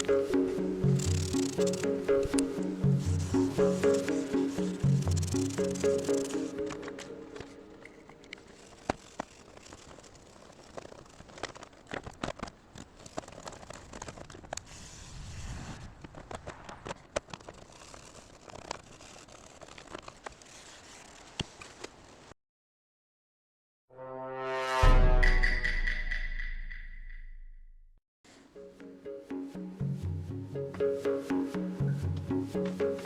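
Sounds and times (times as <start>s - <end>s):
faint rustling: 3.2s - 22.3s.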